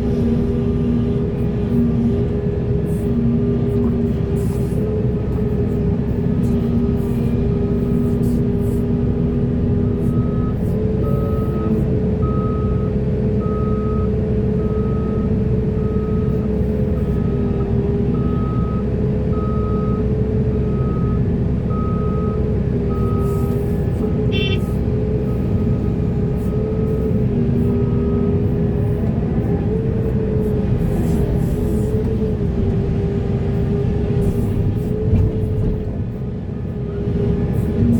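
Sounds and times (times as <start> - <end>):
heavy machinery diesel engine: 0.0 - 37.9
reversing alarm beeping: 17.0 - 20.1, 20.7 - 23.6, 24.3 - 24.7.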